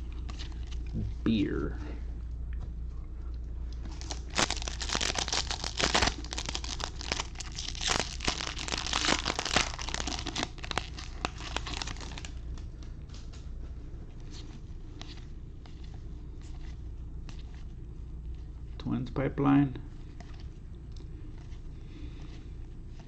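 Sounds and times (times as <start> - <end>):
wrapper tearing and crinkling: 3.9 - 12.5.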